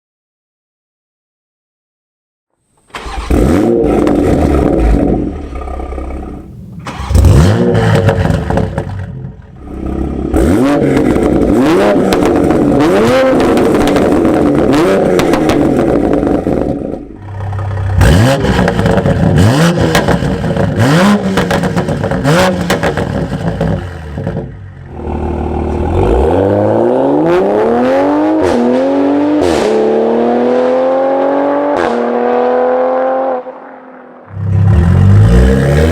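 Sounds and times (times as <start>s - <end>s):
exhaust crackles: 2.9s - 12.8s
car exhaust revving: 3.1s - 33.5s, 34.3s - 35.9s.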